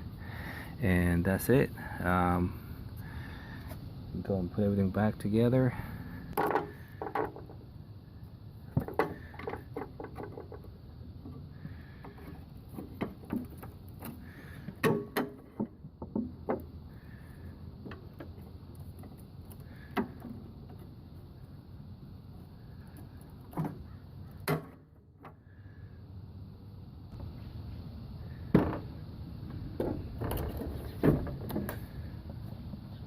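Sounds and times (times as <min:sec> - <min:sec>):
knocks and clanks of mower parts: 0:06.3 - 0:07.6, 0:08.7 - 0:21.0, 0:23.1 - 0:25.4, 0:28.3 - 0:32.4.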